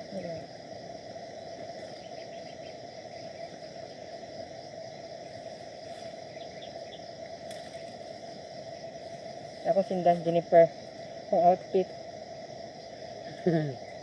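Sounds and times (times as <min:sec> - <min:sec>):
insects chorus: 0:00.0 - 0:14.0.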